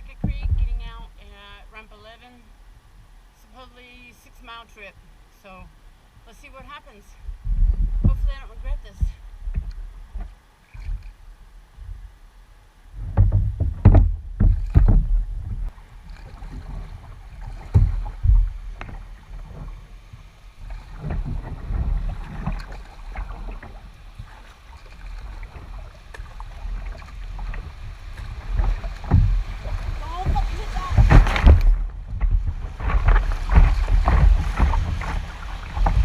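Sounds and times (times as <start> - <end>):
paddle strokes in water: 12.9 - 36.0
water splashing against hull: 12.9 - 36.0
heavy thumps: 13.0 - 15.8, 17.5 - 19.7, 27.4 - 36.0.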